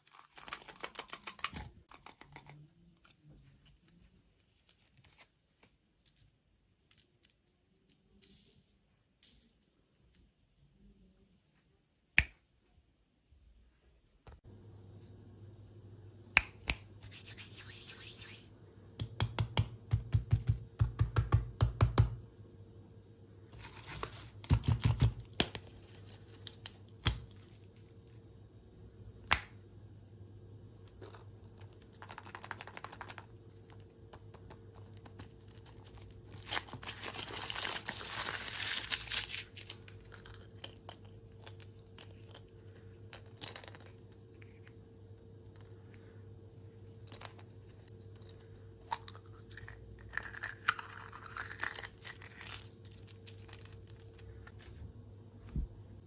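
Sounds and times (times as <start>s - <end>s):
plastic packaging crinkling and tearing: 0.0s - 2.5s, 35.1s - 40.6s, 49.6s - 54.2s
faint low hum: 0.0s - 56.0s.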